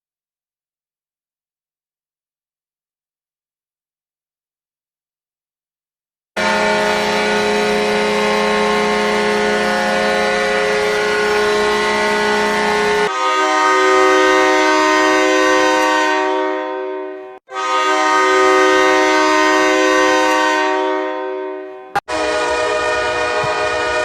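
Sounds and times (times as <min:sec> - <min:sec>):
goal horn: 0:06.4 - 0:24.0
multi-note horn blasts: 0:06.4 - 0:24.0.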